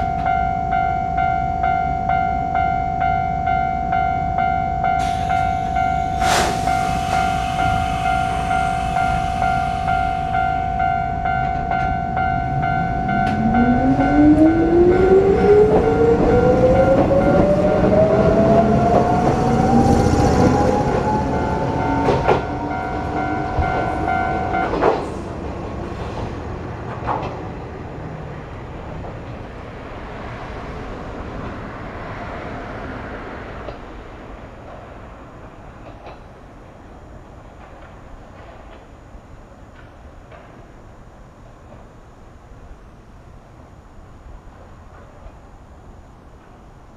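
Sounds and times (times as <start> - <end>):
level crossing alarm: 0.0 - 25.5
electric train motor whine: 5.0 - 25.6.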